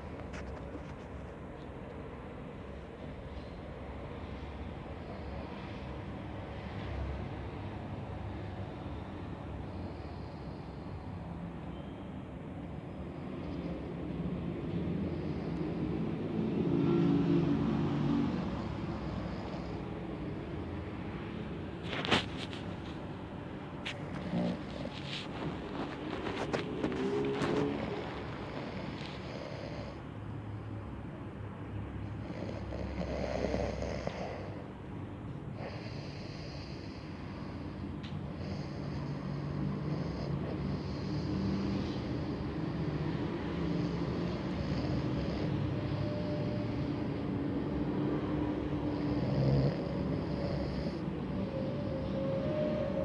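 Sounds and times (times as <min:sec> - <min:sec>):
low snoring: 0:23.9 - 0:30.0, 0:32.0 - 0:34.7, 0:35.6 - 0:53.0.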